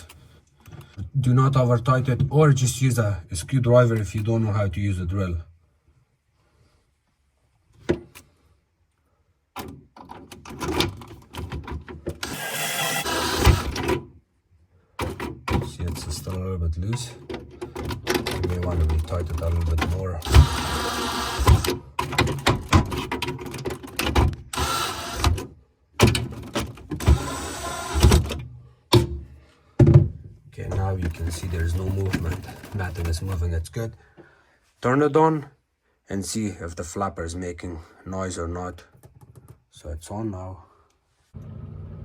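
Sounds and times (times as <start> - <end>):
cordless drill driving screws: 12.2 - 13.9, 20.2 - 21.8, 24.5 - 25.4, 27.0 - 28.4
plastic clicking and rattling: 21.5 - 24.5.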